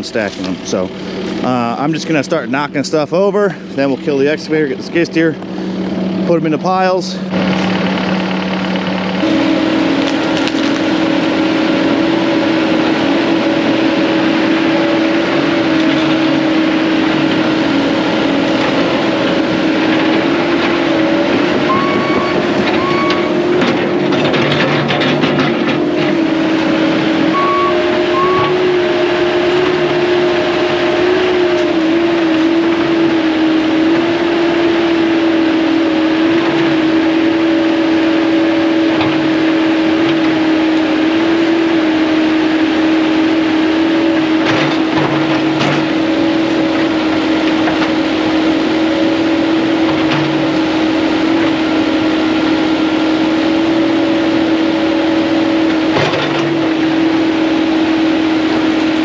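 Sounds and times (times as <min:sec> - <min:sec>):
excavator diesel engine running: 0:00.0 - 0:59.0
steady whine: 0:00.0 - 0:59.0
trees cracking: 0:09.2 - 0:11.5.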